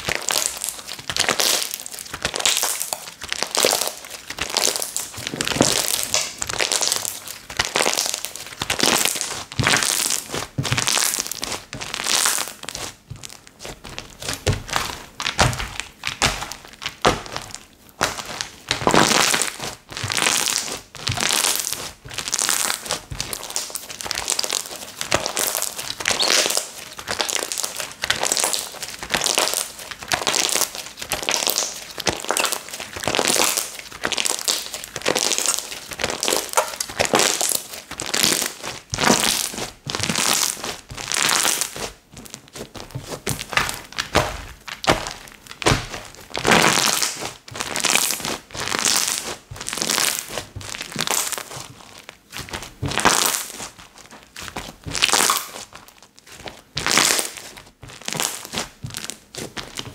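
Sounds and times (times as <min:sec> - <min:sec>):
hands squishing slime: 0:00.0 - 0:59.9.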